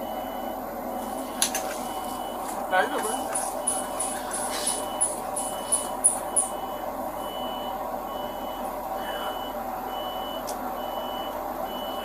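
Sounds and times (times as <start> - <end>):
reversing alarm beeping: 0.0 - 12.0
steady hum: 0.0 - 12.0.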